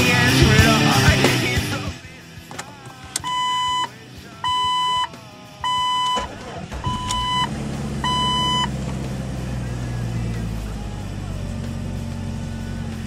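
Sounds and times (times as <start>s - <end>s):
car engine starting and running: 2.4s - 13.0s
car warning chime beeping: 3.0s - 8.8s.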